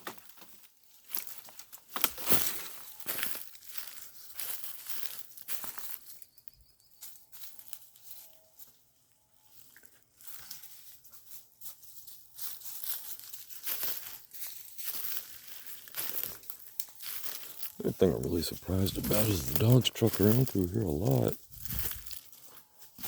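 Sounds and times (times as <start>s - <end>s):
dry leaves and twigs crunching: 0.0s - 23.0s
branches scraping: 17.1s - 23.0s.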